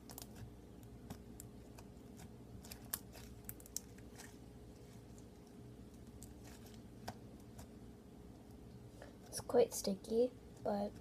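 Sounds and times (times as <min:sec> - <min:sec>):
slime crackling and clicking: 0:01.0 - 0:04.3.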